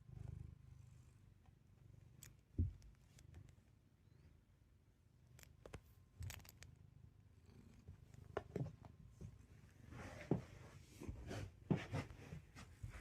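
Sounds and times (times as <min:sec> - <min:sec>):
cat purring: 0:00.0 - 0:04.4, 0:06.3 - 0:12.4
soft clicks and rustles: 0:02.1 - 0:03.8, 0:05.2 - 0:06.8.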